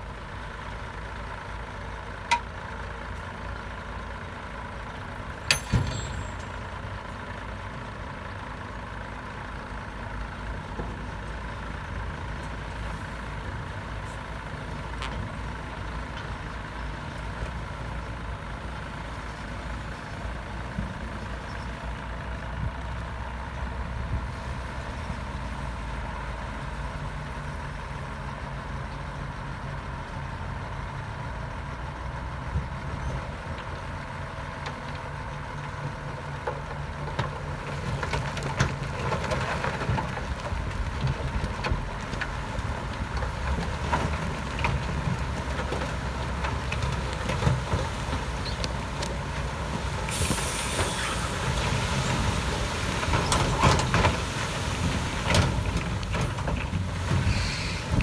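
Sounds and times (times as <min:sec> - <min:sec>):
heavy diesel machinery running: 0:00.0 - 0:58.0
metallic knocks: 0:05.5 - 0:06.6.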